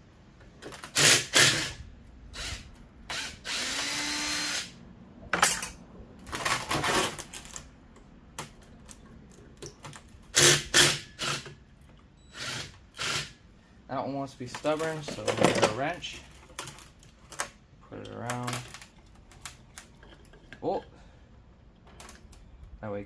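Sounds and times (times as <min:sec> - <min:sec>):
cordless drill running: 0:02.4 - 0:04.8, 0:10.4 - 0:11.5, 0:12.3 - 0:13.4.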